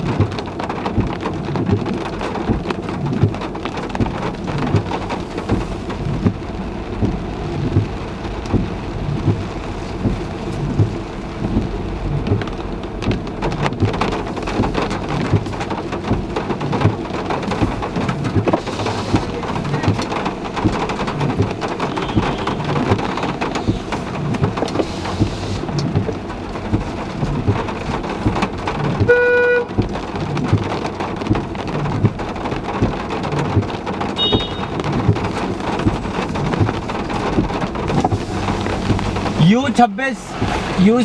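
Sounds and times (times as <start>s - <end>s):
heavy rain on a car: 0.0s - 41.0s
car horn honking: 18.6s - 24.8s, 29.0s - 29.7s, 34.2s - 35.0s.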